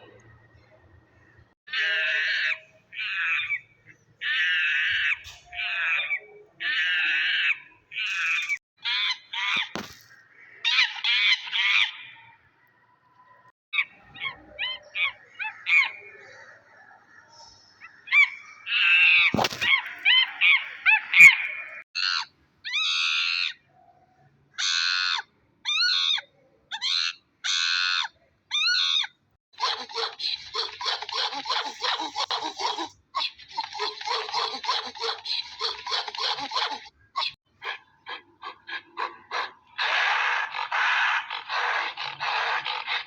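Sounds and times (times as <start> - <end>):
monkey screeching and chattering: 4.2 - 12.0, 18.1 - 23.6, 24.6 - 43.0.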